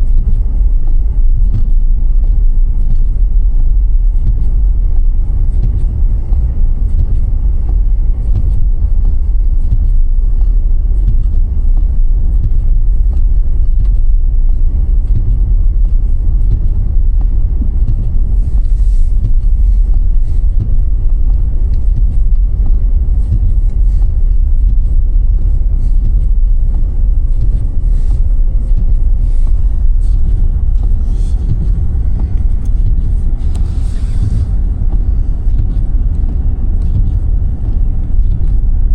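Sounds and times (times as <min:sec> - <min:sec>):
car engine rumble: 0:00.0 - 0:38.9
road noise: 0:00.0 - 0:38.9.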